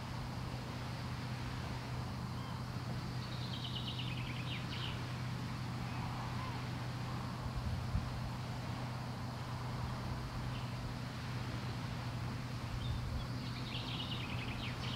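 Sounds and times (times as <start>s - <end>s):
steady low hum: 0.0s - 14.9s
songbird trill: 2.0s - 8.0s, 10.0s - 14.9s.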